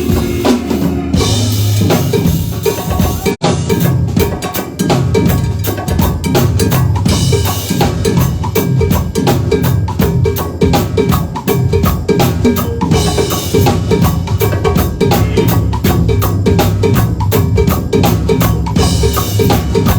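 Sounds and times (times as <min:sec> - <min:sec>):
walking bass line: 0:00.0 - 0:03.4, 0:10.0 - 0:19.9
drum kit beat: 0:00.0 - 0:19.9.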